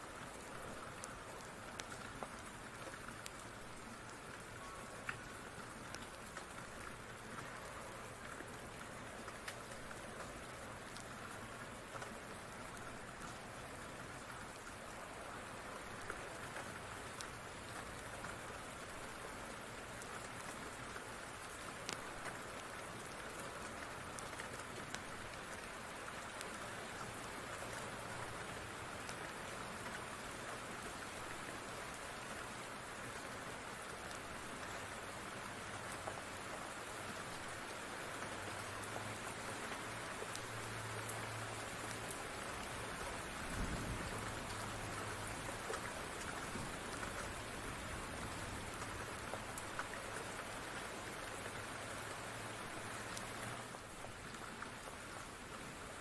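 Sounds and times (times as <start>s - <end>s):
steady rain hissing: 0.0s - 56.0s
raindrop clicks: 0.2s - 15.1s, 15.7s - 28.4s, 35.5s - 51.7s.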